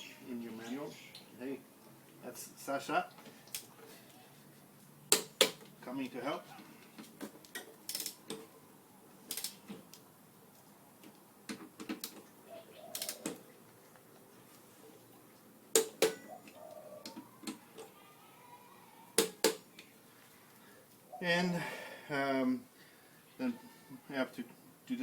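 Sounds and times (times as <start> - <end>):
torque wrench clicking: 9.3 - 9.6.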